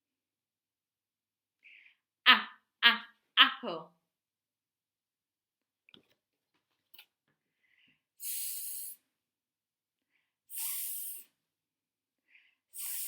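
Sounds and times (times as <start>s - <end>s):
woman hissing: 10.5s - 11.3s.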